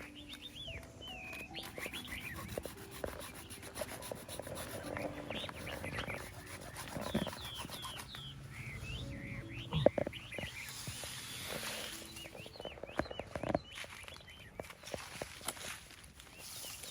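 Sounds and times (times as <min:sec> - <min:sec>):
small birds chirping: 0:00.0 - 0:16.9
rubbing and knocking: 0:01.6 - 0:08.3.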